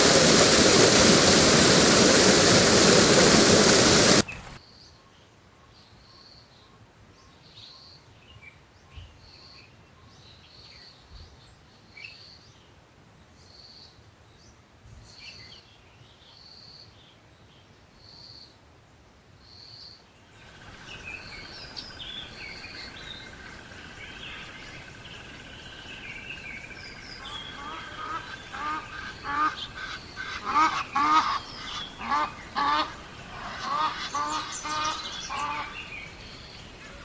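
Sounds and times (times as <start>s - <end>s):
busy bird chatter: 20.8s - 37.0s.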